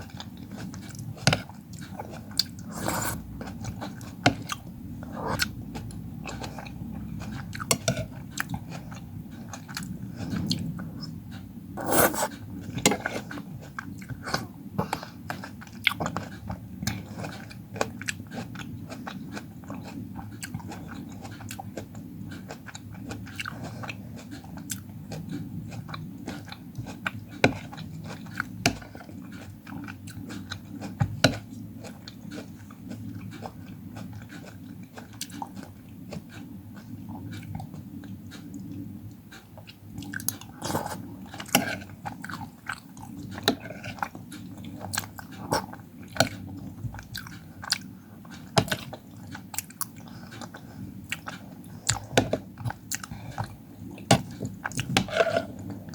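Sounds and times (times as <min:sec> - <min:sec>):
chewing and biting fruit: 0:15.3 - 0:55.9.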